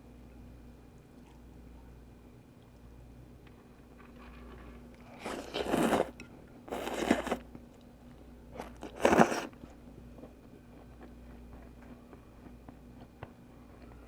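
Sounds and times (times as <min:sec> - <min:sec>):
slurping and chewing: 0:04.0 - 0:07.4, 0:08.6 - 0:13.1.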